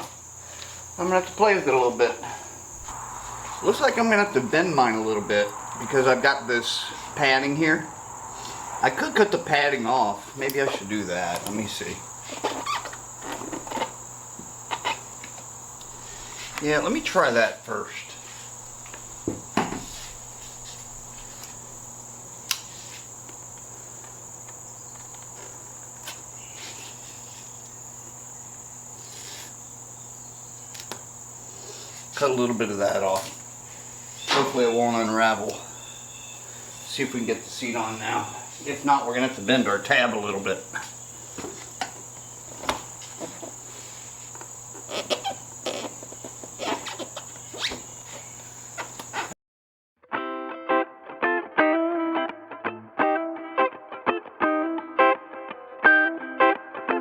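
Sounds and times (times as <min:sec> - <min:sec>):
steady high-pitched whine: 0:00.0 - 0:49.4
low hum: 0:02.7 - 0:09.4
knocks and clicks of motorcycle seat: 0:19.2 - 0:20.0
rustling snips of cutting: 0:22.4 - 0:28.0.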